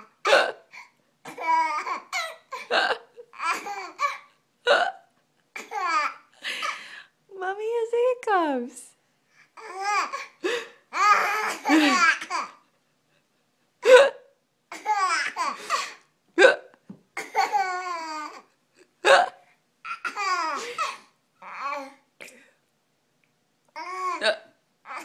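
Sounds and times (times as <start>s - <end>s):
woman hiccuping: 0.3s - 0.6s, 4.7s - 5.0s, 13.8s - 14.3s, 16.4s - 16.8s, 19.0s - 19.4s, 24.2s - 24.5s
baby laughing: 1.3s - 4.3s, 5.5s - 6.8s, 9.6s - 10.3s, 10.9s - 12.7s, 14.7s - 15.9s, 17.2s - 18.5s, 19.9s - 21.9s.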